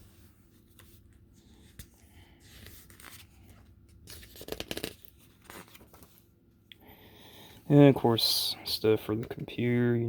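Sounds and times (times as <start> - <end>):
paper pages rustling and turning: 0.0 - 6.4.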